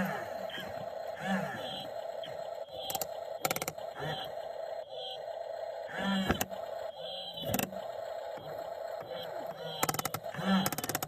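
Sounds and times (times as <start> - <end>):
small electric motors whining: 0.0 - 11.0
steady hum: 0.0 - 11.0
sharp clicking bursts: 2.8 - 3.9, 9.0 - 11.0.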